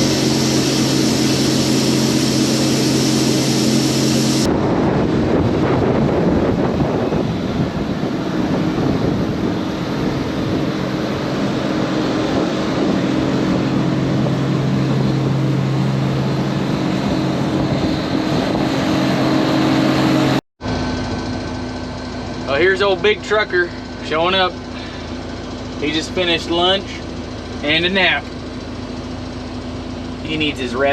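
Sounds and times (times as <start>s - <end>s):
diesel engine running under load: 0.0s - 30.9s.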